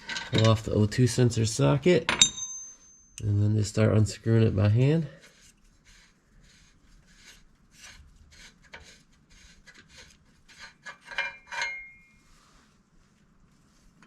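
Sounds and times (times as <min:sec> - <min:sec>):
metallic clinks: 0:02.1 - 0:03.3, 0:11.2 - 0:12.2
threads rasping: 0:04.2 - 0:12.2.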